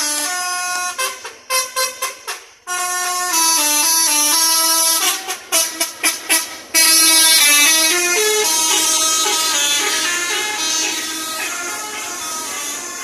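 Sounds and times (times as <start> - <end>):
air horns playing a tune: 0.0 - 13.0.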